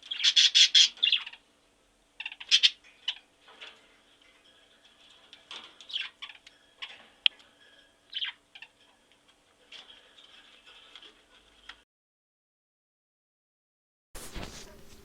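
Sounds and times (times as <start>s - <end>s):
budgerigars chirping and chattering: 0.0s - 11.8s
faint steady hum: 0.0s - 11.8s.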